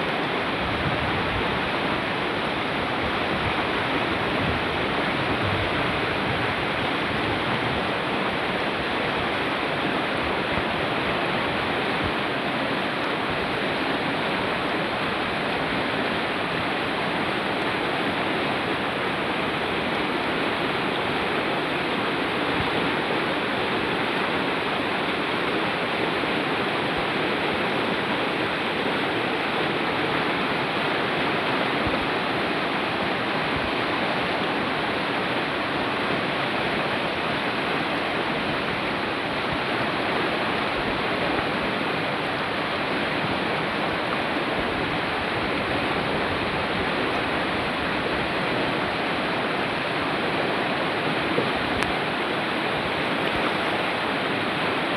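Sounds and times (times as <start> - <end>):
stream rushing over rocks: 0.0 - 54.9.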